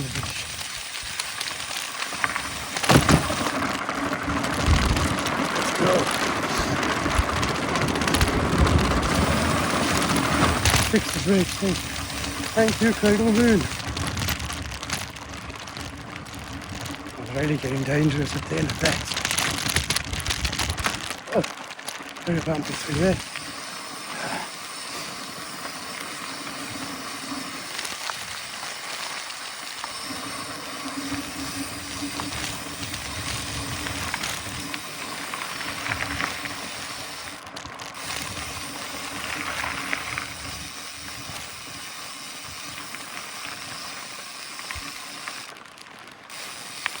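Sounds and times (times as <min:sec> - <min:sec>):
bike tyres rolling on dirt: 0:00.0 - 0:47.0
wind hiss: 0:04.6 - 0:14.6, 0:38.0 - 0:45.5.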